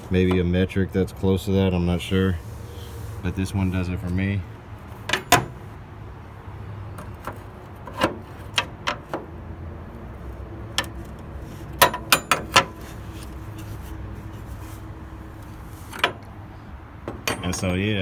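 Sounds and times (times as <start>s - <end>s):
hand tools clinking: 17.2s - 17.9s.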